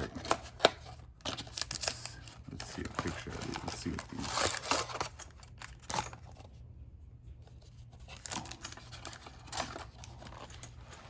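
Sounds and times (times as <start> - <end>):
packaging rustling and tapping: 0.0 - 6.4, 8.0 - 11.0.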